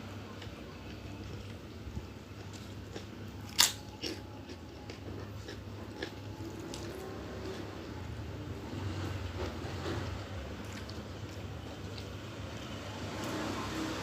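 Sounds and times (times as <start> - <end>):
person chewing food: 0.4 - 7.6, 10.6 - 12.1.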